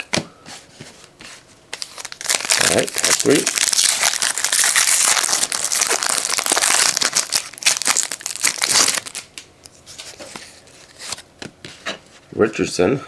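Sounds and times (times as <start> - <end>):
plastic wrapper tearing and crinkling: 1.8 - 9.4.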